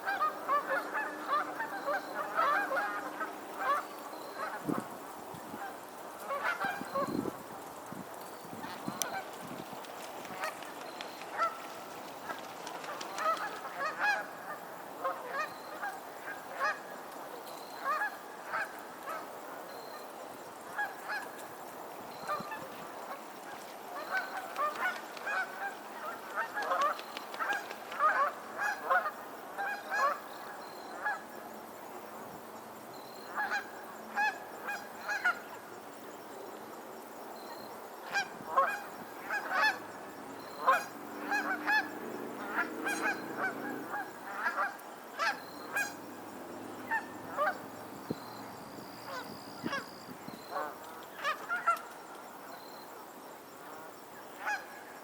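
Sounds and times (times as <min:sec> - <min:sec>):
geese honking: 0:00.0 - 0:04.6, 0:11.3 - 0:16.8, 0:38.1 - 0:39.9, 0:40.6 - 0:46.1, 0:46.9 - 0:47.6.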